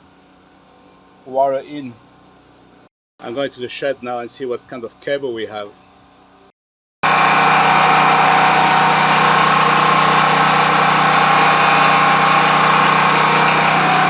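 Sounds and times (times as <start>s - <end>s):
generator engine droning: 7.0s - 14.0s.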